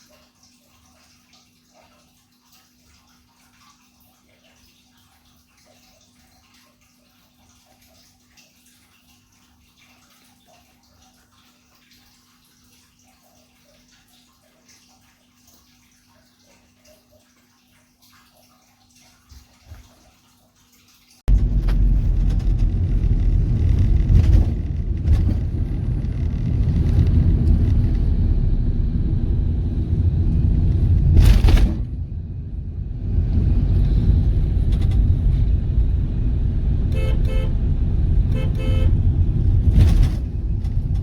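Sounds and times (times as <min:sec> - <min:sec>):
low hum: 0:21.3 - 0:41.0.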